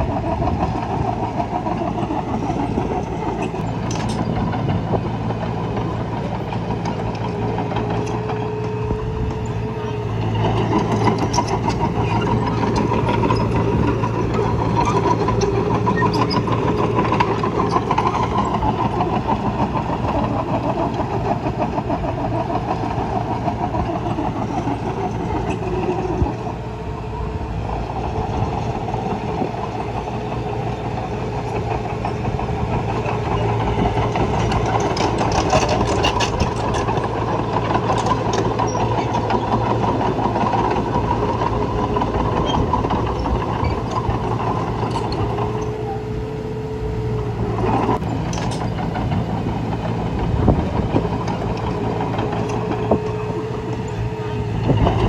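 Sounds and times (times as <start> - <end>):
heavy diesel machinery running: 0.0 - 55.0.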